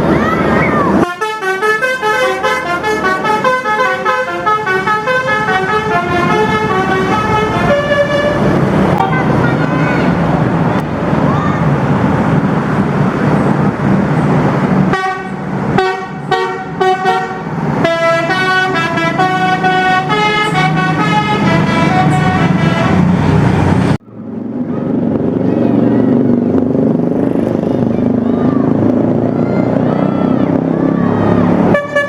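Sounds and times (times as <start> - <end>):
bus engine running: 0.0 - 32.0
musical bus horn melody: 1.0 - 10.2, 14.9 - 23.3, 31.7 - 32.0.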